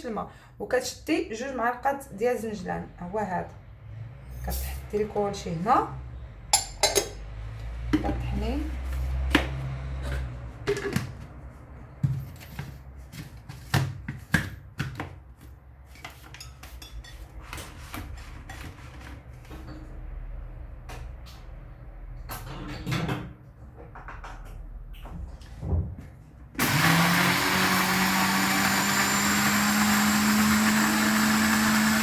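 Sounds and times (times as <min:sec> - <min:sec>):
blender grinding: 0:26.6 - 0:32.0.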